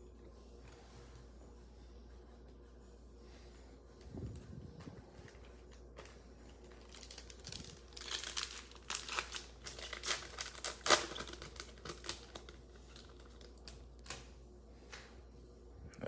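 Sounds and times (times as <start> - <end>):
card pack wrapper crinkling and tearing: 5.2 - 14.3.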